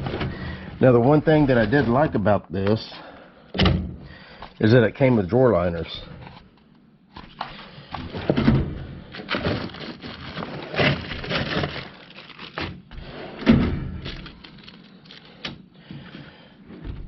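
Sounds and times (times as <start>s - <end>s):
rustling and knocking at tool chest: 7.2s - 9.9s, 15.8s - 17.0s.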